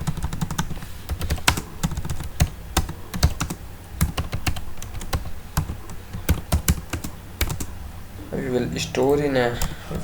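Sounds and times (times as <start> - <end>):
computer keyboard typing: 0.0 - 7.7.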